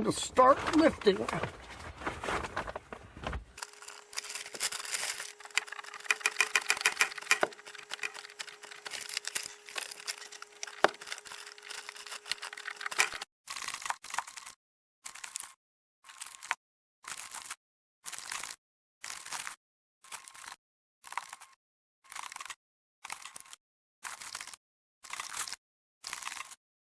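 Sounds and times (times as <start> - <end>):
timbers creaking: 0.0 - 3.6.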